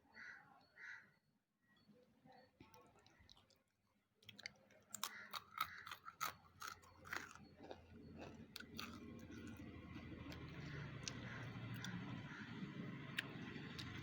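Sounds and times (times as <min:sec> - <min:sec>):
person chewing: 0:02.6 - 0:12.3, 0:13.0 - 0:14.0.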